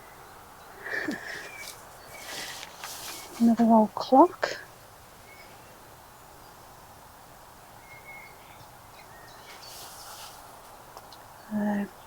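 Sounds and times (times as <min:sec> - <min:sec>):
faint bird chirps: 0:00.0 - 0:03.4, 0:05.2 - 0:06.8, 0:07.8 - 0:10.4
high rustle: 0:01.3 - 0:03.8, 0:09.4 - 0:10.8.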